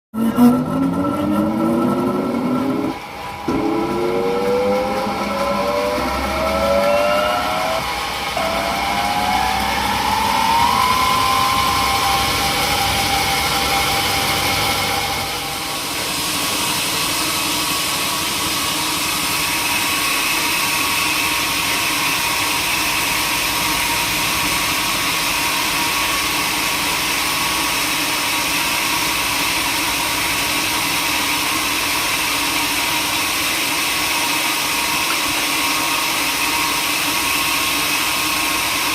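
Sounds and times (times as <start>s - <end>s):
saw cutting wood: 0.2s - 17.2s
sawmill saw machinery: 0.2s - 38.9s.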